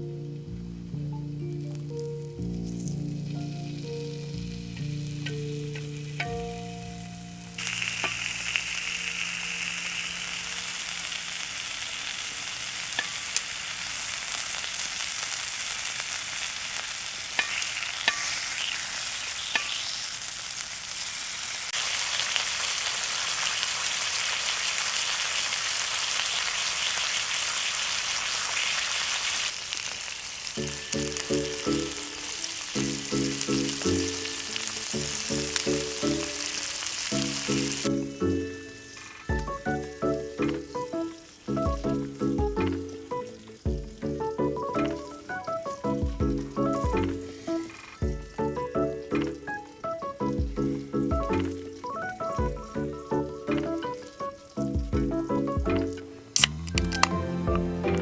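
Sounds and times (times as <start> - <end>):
simple background music melody: 0.0 - 10.7, 30.6 - 58.0
food sizzling in a hot pan: 2.6 - 58.0.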